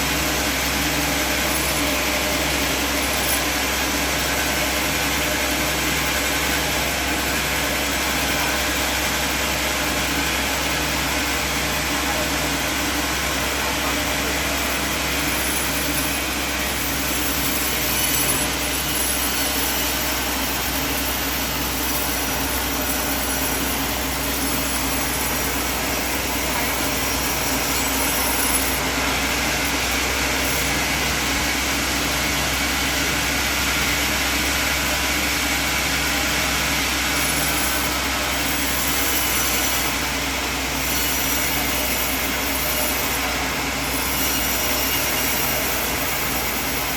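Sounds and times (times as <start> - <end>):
band sawmill running: 0.0 - 46.9.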